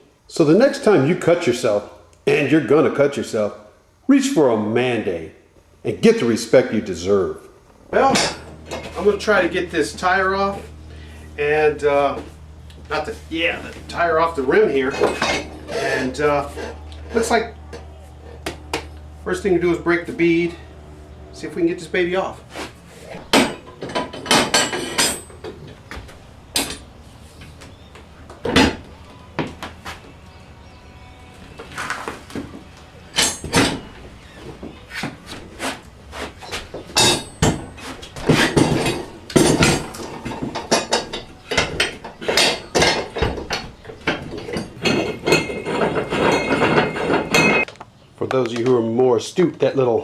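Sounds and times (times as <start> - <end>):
metal clanks and knocks: 7.9 - 47.7.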